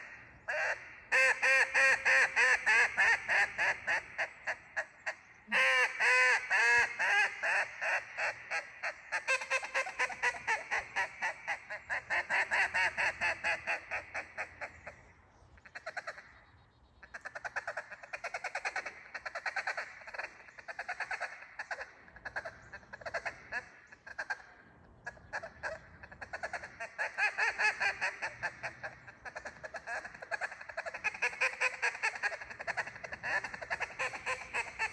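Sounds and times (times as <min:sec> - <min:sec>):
duck call quacking: 0:00.0 - 0:15.0, 0:17.1 - 0:34.9.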